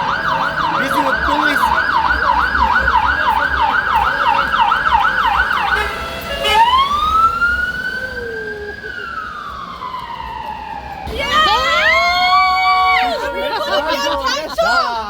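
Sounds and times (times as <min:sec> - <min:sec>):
emergency vehicle siren: 0:00.0 - 0:14.4.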